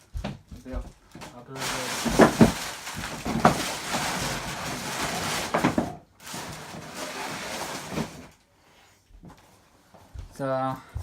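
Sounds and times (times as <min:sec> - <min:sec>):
rustling of gear and packaging: 0:01.0 - 0:08.4.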